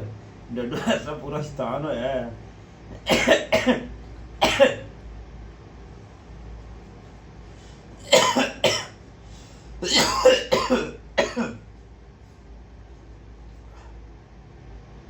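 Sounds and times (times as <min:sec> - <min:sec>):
person coughing harshly: 0:00.7 - 0:01.1, 0:02.9 - 0:04.9, 0:08.0 - 0:09.0, 0:09.8 - 0:11.6.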